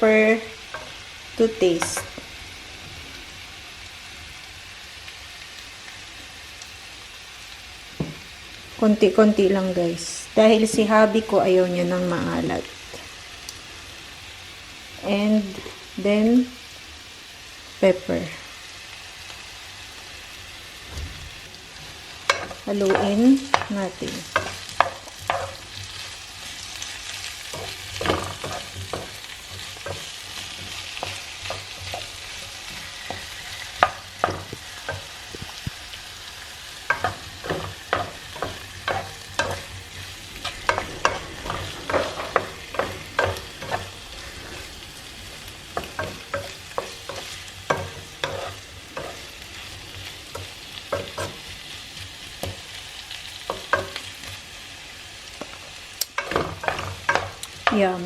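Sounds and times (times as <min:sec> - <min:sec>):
vegetables sizzling in a pan: 0:00.0 - 0:58.0
utensil scraping against pan: 0:26.7 - 0:35.5, 0:36.8 - 0:51.6.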